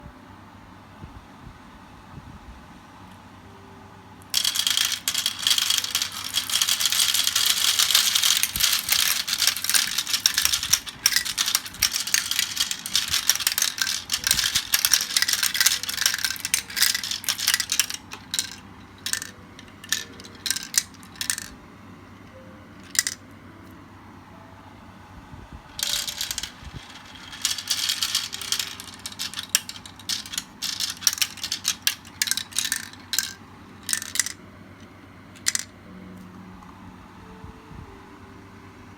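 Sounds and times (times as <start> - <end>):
marbles rattling down a marble run: 4.3 - 21.6, 22.8 - 23.2, 25.8 - 34.4, 35.4 - 35.7.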